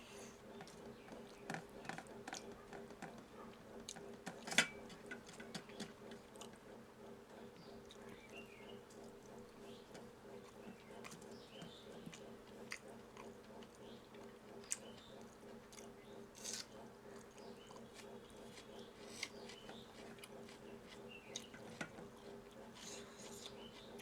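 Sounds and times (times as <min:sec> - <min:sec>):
person chewing: 0:12.1 - 0:13.4.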